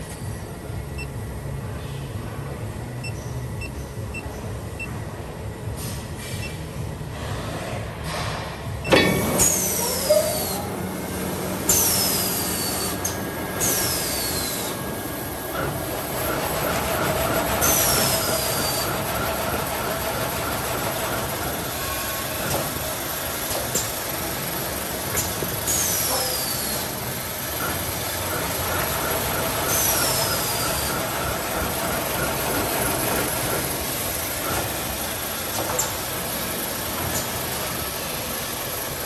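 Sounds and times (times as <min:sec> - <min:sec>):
machine humming: 0:08.7 - 0:39.0
motor winding up whine: 0:11.6 - 0:15.0.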